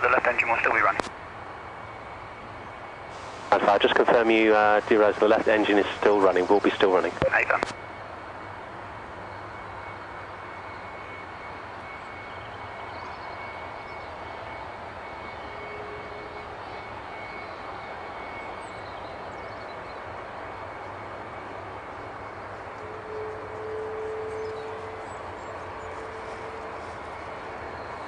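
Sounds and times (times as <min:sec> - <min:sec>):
jet engine rushing with whine: 0:00.0 - 0:28.0
low hum: 0:20.3 - 0:28.0.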